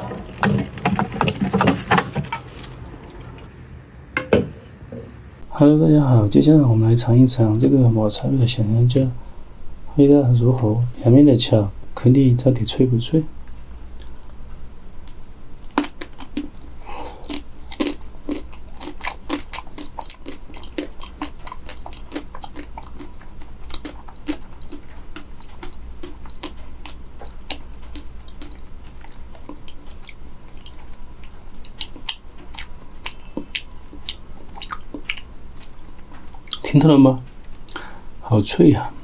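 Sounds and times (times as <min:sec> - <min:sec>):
chewing: 0:14.0 - 0:14.4, 0:15.7 - 0:36.7
chocolate shell crunching: 0:15.7 - 0:30.8.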